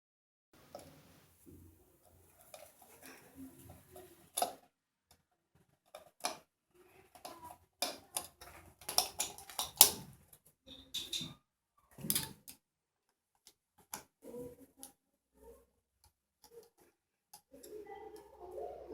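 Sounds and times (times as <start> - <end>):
plastic and metal parts clicking: 7.1 - 10.1, 12.0 - 12.6.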